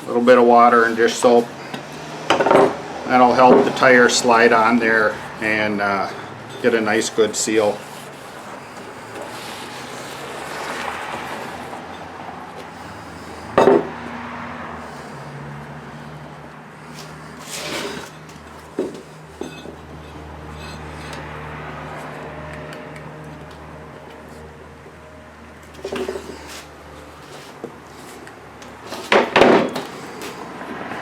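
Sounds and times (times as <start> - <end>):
metal tools clanking: 1.0 - 7.8, 17.5 - 21.3.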